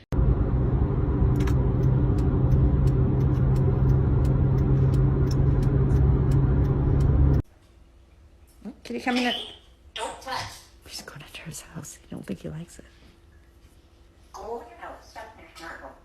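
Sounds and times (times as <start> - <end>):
loud low rumble: 0.0 - 7.4.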